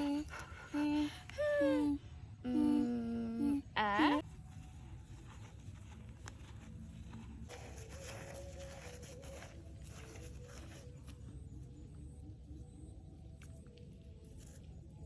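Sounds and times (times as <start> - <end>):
person humming pitched notes: 0.0 - 4.2
faint background noise: 0.0 - 15.0.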